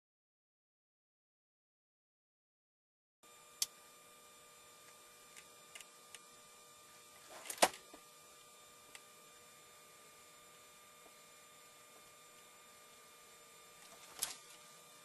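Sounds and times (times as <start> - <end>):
electrical hum: 3.2 - 15.0.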